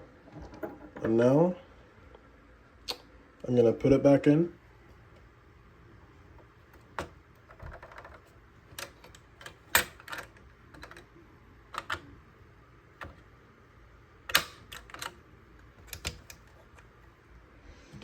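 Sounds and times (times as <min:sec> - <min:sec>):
metal retention lever snapping: 0:08.7 - 0:11.0, 0:14.3 - 0:15.2, 0:15.8 - 0:16.5.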